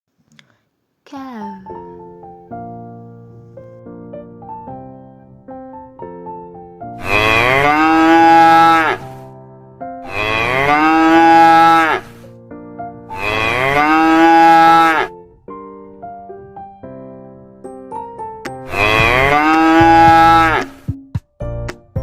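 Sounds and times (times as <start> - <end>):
piano melody: 1.4 - 8.2, 9.0 - 11.1, 12.1 - 20.5
cow mooing: 7.0 - 9.0, 10.0 - 12.2, 13.1 - 15.2, 18.7 - 20.8.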